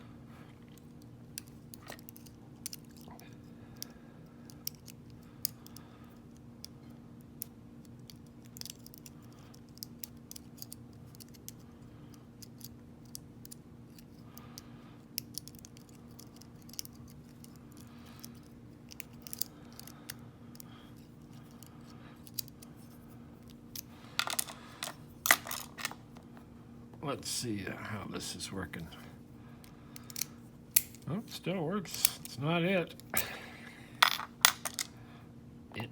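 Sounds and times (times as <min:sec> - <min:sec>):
faint steady hum: 0:00.0 - 0:35.9
lock pick clicking and scraping: 0:15.2 - 0:24.6.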